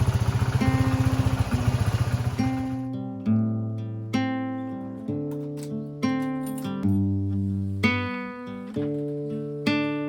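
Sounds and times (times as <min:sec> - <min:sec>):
motorcycle engine idling: 0:00.0 - 0:02.8
acoustic guitar music: 0:00.0 - 0:10.0.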